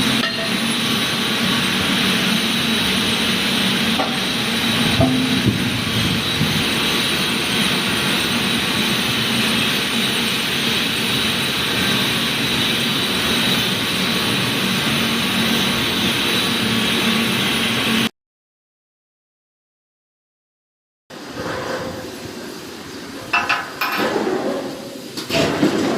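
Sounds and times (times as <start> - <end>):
machinery running: 0.0 - 18.1
low hum: 4.0 - 6.9.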